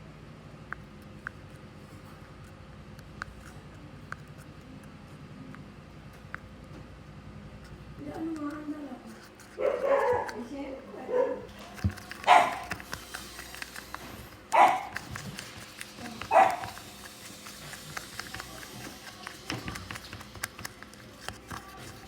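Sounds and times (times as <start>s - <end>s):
dog barking: 9.6s - 11.5s, 12.2s - 12.8s, 14.5s - 15.0s, 16.2s - 16.8s.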